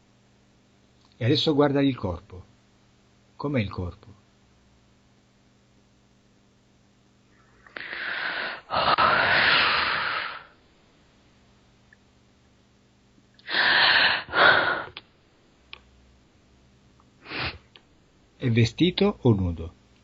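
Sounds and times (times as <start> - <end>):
person breathing heavily: 7.4 - 10.6, 13.4 - 15.0.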